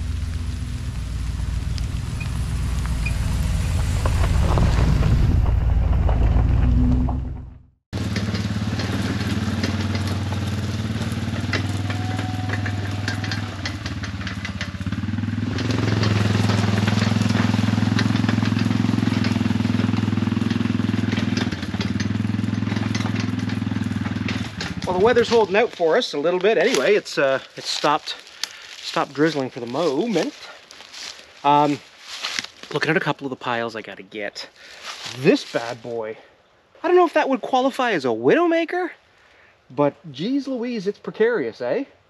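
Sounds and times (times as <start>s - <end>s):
quad engine running: 0.0s - 5.6s, 6.4s - 27.0s.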